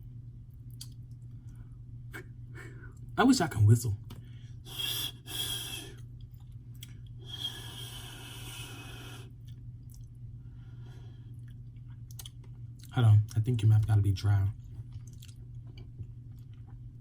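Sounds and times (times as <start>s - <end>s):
steady low hum: 0.0s - 17.0s
man blowing air through lips: 4.7s - 6.0s, 7.2s - 9.3s.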